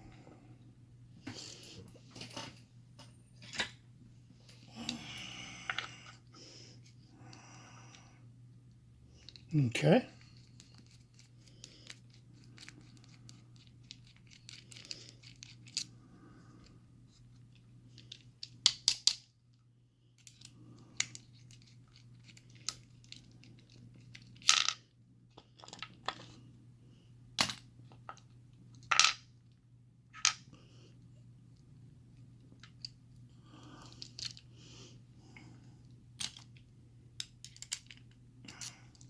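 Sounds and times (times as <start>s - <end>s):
steady low hum: 0.0s - 18.5s.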